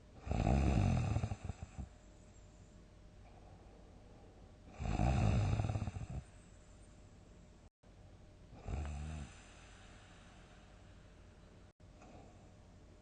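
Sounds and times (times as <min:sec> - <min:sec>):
person snoring loudly: 0:00.2 - 0:01.9, 0:04.7 - 0:06.2, 0:08.6 - 0:09.7.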